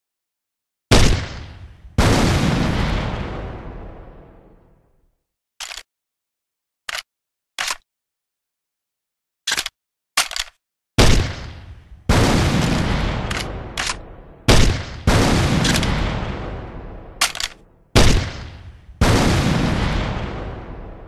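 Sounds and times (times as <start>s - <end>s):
heavy grenade launcher blasts: 0.9s - 4.6s, 11.0s - 21.0s.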